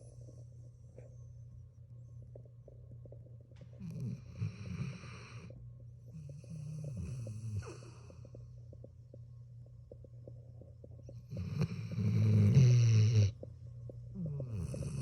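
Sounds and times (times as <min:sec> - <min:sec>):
dog snoring: 0:03.8 - 0:08.4, 0:11.0 - 0:13.5, 0:14.1 - 0:15.0.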